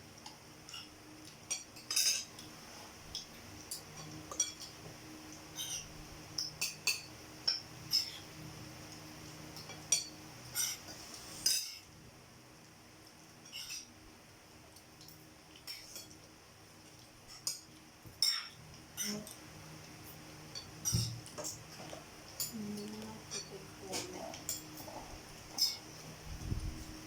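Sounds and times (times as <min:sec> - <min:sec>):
cutlery clinking against plates: 0:00.6 - 0:02.5, 0:03.1 - 0:04.9, 0:05.5 - 0:08.3, 0:09.5 - 0:11.9, 0:13.4 - 0:14.0, 0:17.3 - 0:19.4, 0:20.5 - 0:22.6, 0:23.2 - 0:25.9.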